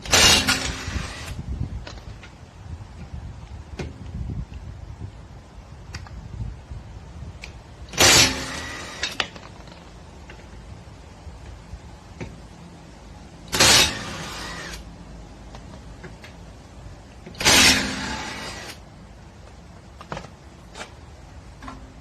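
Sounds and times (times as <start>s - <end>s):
impact wrench bursts: 0.0s - 1.4s, 7.9s - 9.4s, 13.5s - 14.9s, 17.3s - 18.8s.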